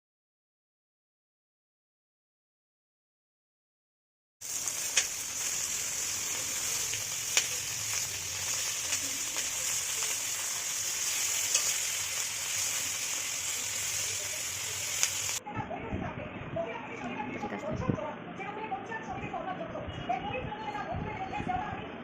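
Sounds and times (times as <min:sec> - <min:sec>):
food frying in oil: 0:04.4 - 0:15.4
oil popping and crackling: 0:04.4 - 0:15.4.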